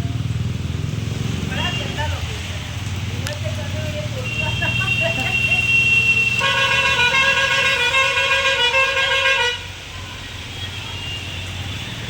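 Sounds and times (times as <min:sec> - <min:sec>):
vehicle horn blaring: 0:04.3 - 0:11.5.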